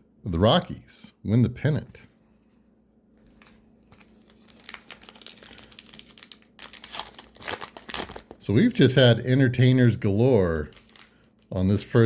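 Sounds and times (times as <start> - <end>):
wrapper crinkling and tearing: 3.3 - 8.8, 10.2 - 11.9.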